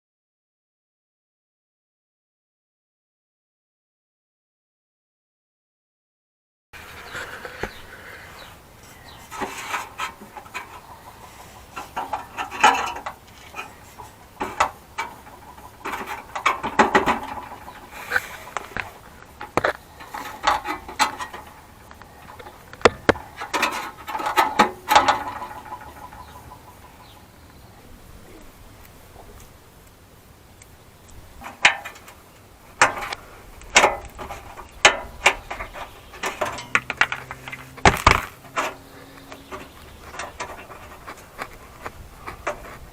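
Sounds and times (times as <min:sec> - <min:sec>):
tinny metal rattling under car: 0:06.8 - 0:27.3, 0:31.3 - 0:42.9.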